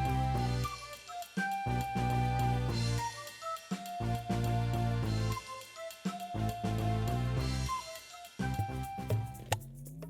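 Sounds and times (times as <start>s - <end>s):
upbeat instrumental music: 0.0s - 10.0s.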